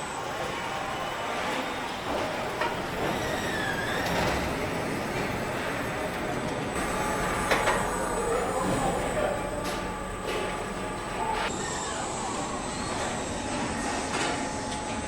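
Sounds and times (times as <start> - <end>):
assembly line machinery: 0.0 - 15.0.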